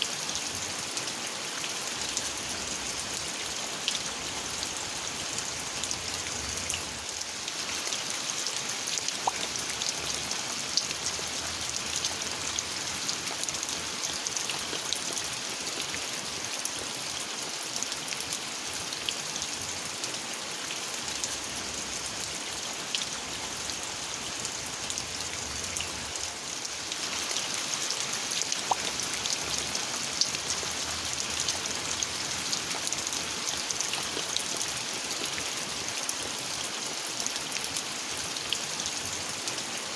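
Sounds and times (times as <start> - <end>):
raindrops ticking on surfaces: 0.0 - 39.9
steady rain falling: 0.0 - 39.9.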